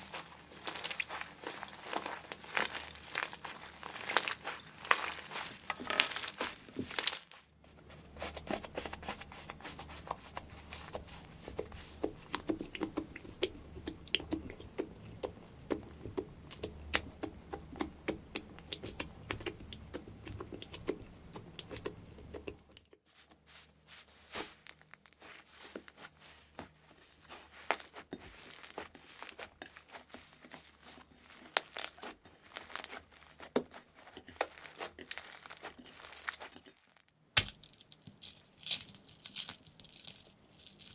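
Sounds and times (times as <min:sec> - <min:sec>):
slime squishing and crackling: 0:00.0 - 0:22.8, 0:24.1 - 0:40.9.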